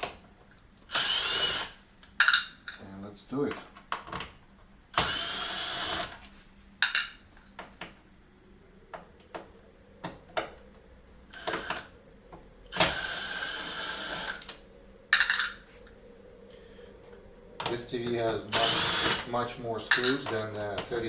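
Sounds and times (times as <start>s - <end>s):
power drill motor whining: 0.9s - 1.8s, 4.9s - 6.2s, 11.3s - 11.9s, 12.7s - 14.6s, 18.5s - 19.3s.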